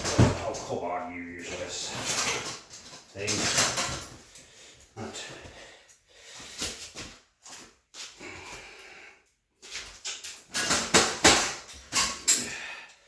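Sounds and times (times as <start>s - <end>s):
metal knocks rattles and scrapes: 0.0s - 4.4s, 9.9s - 12.6s.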